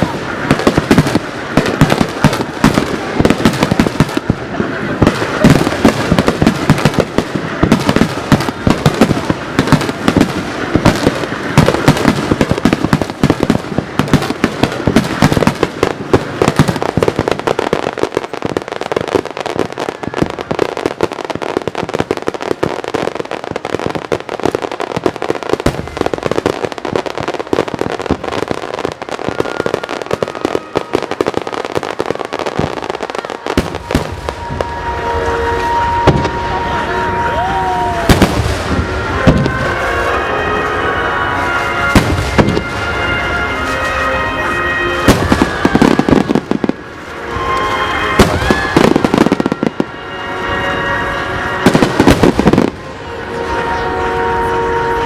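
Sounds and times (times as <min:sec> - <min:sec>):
deep firework booms: 0:00.0 - 0:40.8, 0:41.8 - 0:49.9, 0:51.6 - 0:53.0
firework crackling: 0:00.0 - 0:55.0.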